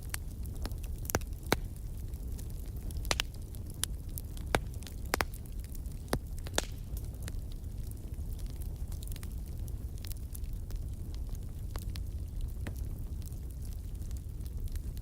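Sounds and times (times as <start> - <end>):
low rumble of flames: 0.0 - 15.0
wood fire crackling and popping: 0.0 - 15.0.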